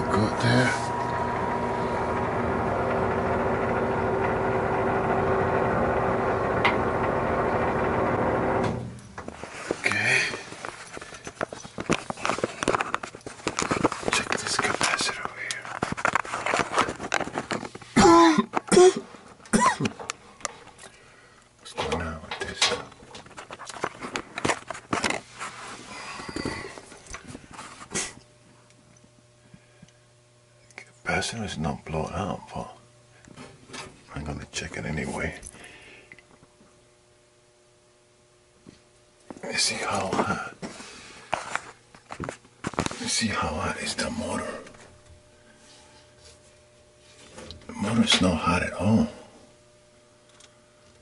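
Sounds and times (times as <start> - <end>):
air conditioner humming: 0.0 - 51.0
scraping and rustling: 9.2 - 18.0, 23.1 - 26.4.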